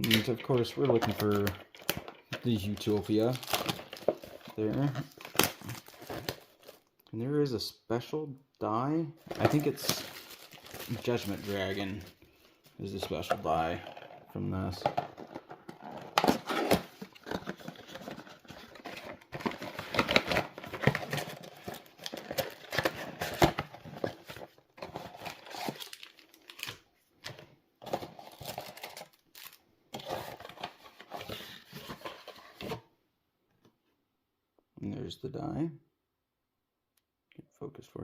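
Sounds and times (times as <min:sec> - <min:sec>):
foil wrapper crinkling: 0:09.4 - 0:12.1, 0:25.0 - 0:26.8.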